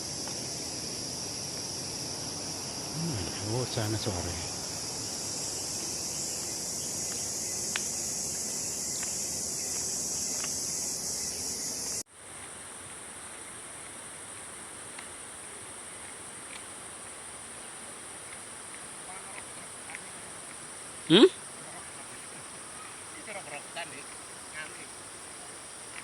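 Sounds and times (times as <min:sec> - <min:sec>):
thin insect buzz: 0:00.0 - 0:12.0, 0:21.1 - 0:26.0
forest insects chorus: 0:00.0 - 0:26.0.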